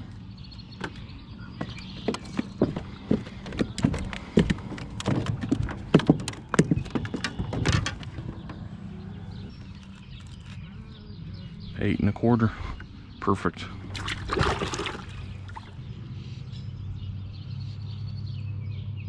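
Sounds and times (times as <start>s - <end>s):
fish flopping against boat: 0.8s - 8.6s, 13.7s - 15.8s.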